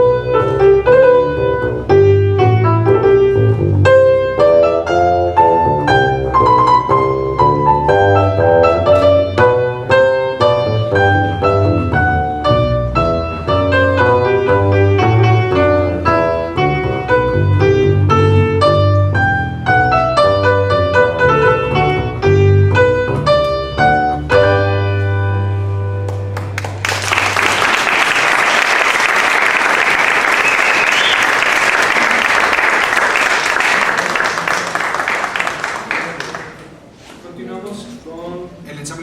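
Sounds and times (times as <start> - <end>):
piano playing baroque piece: 0.0 - 26.5
audience applause: 26.3 - 36.8.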